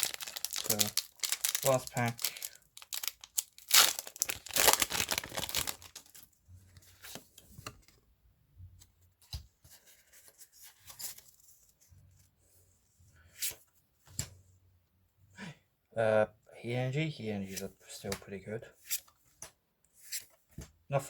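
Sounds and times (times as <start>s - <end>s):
cards rustling: 0.0s - 6.2s
foil wrapper ripping: 0.0s - 6.2s.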